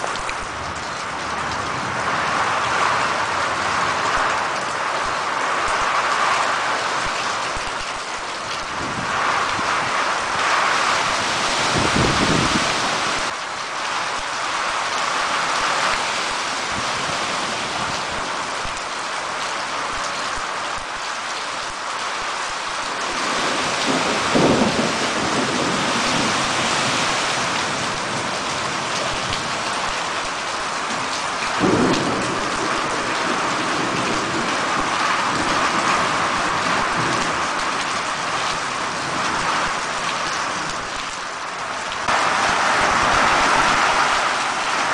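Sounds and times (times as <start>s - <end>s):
heavy rain falling: 0.0s - 44.9s
thunder rumbling: 8.6s - 13.3s, 23.0s - 29.8s, 31.5s - 37.7s.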